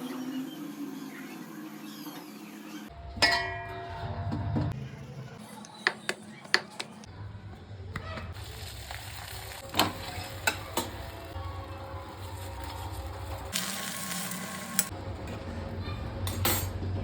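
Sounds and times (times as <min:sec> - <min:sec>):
flatbread sizzling on a pan: 0:12.3 - 0:14.9.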